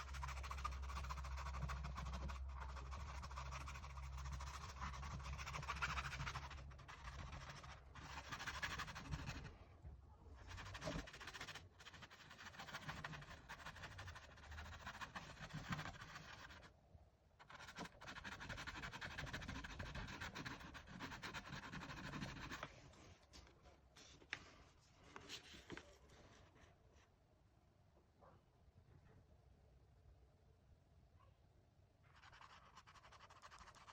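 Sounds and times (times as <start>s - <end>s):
paintbrush scratching on canvas: 0.0s - 9.5s, 10.4s - 16.7s, 17.4s - 22.7s, 32.1s - 33.9s.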